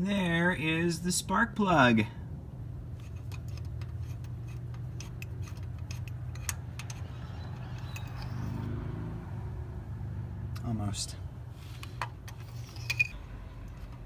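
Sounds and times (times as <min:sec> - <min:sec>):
socket ratchet clicking: 0:03.3 - 0:08.5.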